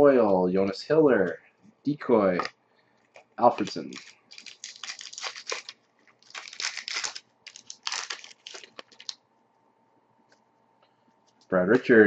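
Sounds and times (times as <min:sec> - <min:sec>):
card pack wrapper crinkling: 0:03.5 - 0:09.2.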